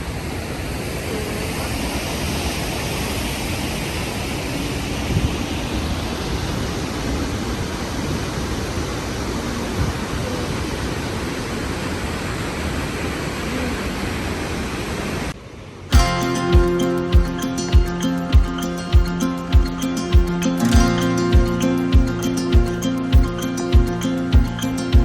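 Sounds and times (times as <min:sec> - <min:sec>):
waterfall rushing: 0:15.9 - 0:25.0
low thumps: 0:16.0 - 0:25.0.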